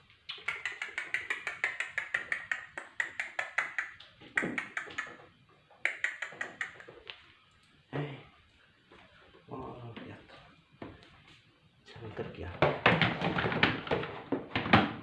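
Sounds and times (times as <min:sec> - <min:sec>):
sharp clicking taps: 0:00.3 - 0:07.2.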